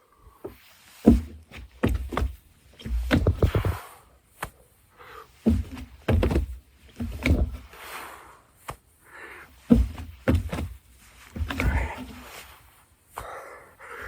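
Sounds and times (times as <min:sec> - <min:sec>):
thuds of body hitting ground: 0:01.0 - 0:03.8, 0:05.4 - 0:07.7, 0:09.7 - 0:12.2
man breathing heavily and grunting: 0:03.5 - 0:05.4, 0:07.8 - 0:09.6, 0:11.5 - 0:12.4, 0:13.1 - 0:14.0.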